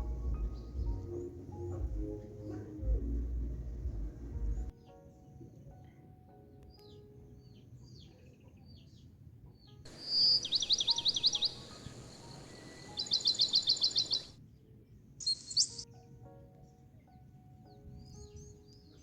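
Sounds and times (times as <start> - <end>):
birds chirping: 0.0 - 4.7, 9.9 - 14.4, 15.2 - 15.8
soft background music: 0.0 - 19.0
bird trilling: 9.9 - 14.3.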